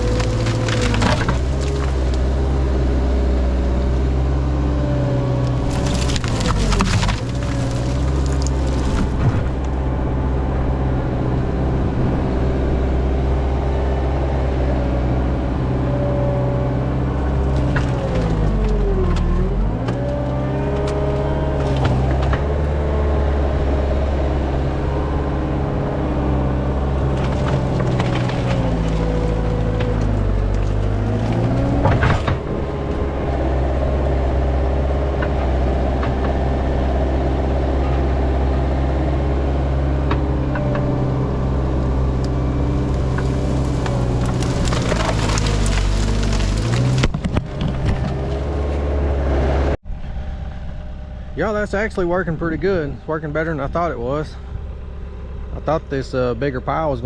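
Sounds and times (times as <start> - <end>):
branches snapping and cracking: 0.0 - 3.1, 5.3 - 9.9, 17.2 - 23.1, 26.8 - 37.0, 39.5 - 48.9
diesel engine working hard: 0.0 - 57.0.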